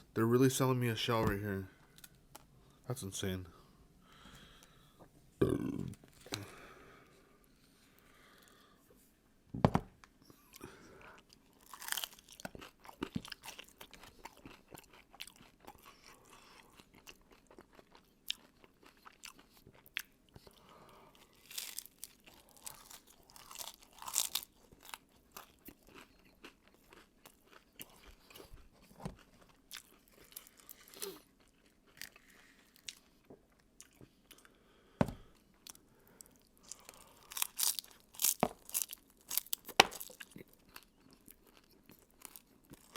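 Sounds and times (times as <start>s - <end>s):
chewing: 10.4s - 34.6s
crunchy taco shell bites: 11.4s - 20.5s, 21.2s - 33.0s, 35.6s - 42.9s.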